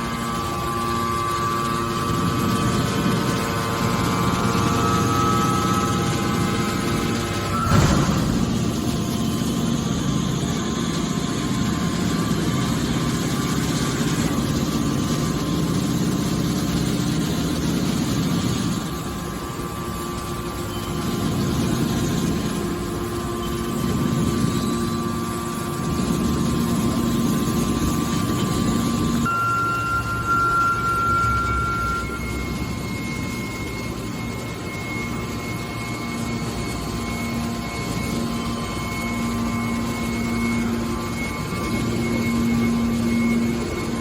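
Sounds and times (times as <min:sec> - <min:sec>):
baler mechanical hum: 0:00.0 - 0:44.0.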